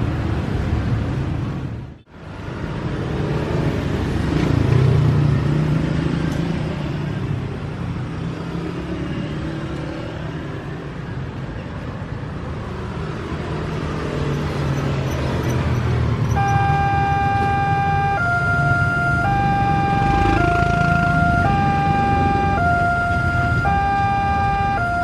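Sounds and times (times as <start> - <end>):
motor vehicles passing: 0.0 - 25.0
level crossing warning siren: 16.3 - 25.0.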